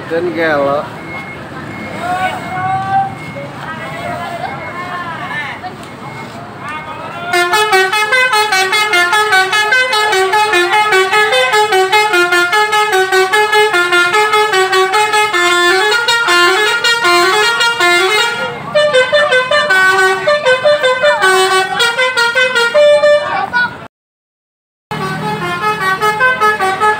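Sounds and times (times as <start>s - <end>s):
musical bus horn melody: 7.3s - 23.8s, 24.9s - 26.9s.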